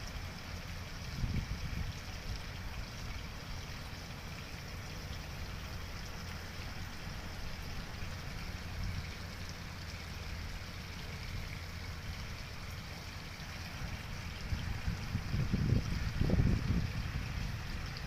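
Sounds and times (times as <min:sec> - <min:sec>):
flowing water rushing: 0:00.0 - 0:18.0.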